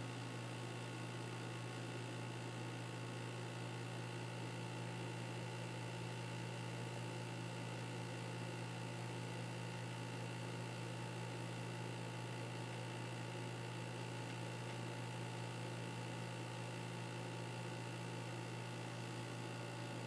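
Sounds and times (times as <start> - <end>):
electric fan motor hum: 11.2 - 20.0.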